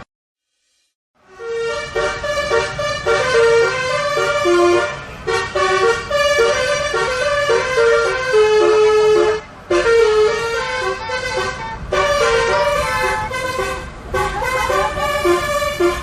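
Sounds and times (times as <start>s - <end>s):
multi-tone bus horn tune: 1.2s - 16.0s.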